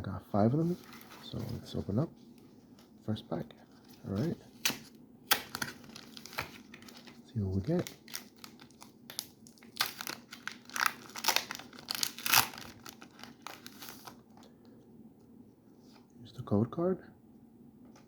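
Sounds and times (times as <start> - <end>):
foil wrapper crinkling and tearing: 4.1 - 14.2.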